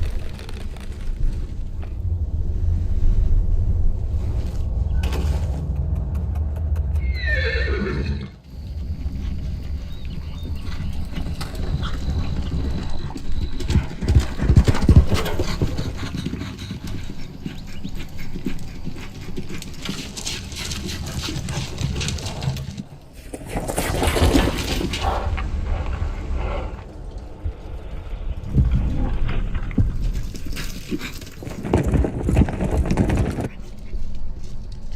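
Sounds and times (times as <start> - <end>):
horse hoofbeats thudding: 5.0 - 22.9, 28.4 - 34.8
horse whinny: 7.0 - 8.4.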